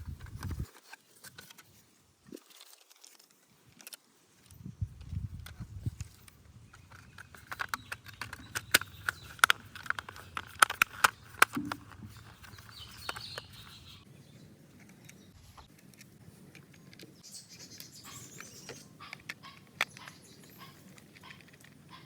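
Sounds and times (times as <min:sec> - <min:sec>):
plastic toy parts clicking: 0:05.0 - 0:13.5, 0:18.4 - 0:22.0.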